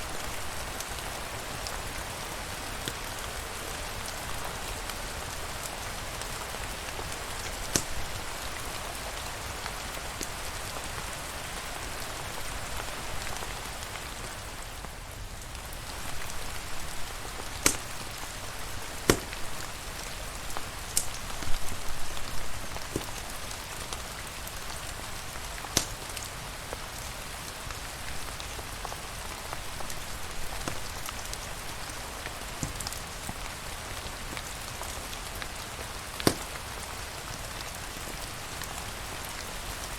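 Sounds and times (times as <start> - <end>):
steady rain falling: 0.0 - 39.9
sharp clicks or pops: 7.4 - 8.2, 17.5 - 18.1, 19.0 - 19.5, 25.8 - 26.0, 36.2 - 36.5.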